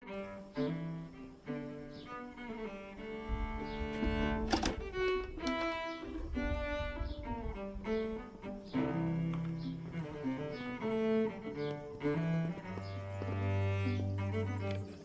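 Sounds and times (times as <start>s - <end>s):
low bowed-string melody: 0.0s - 15.0s.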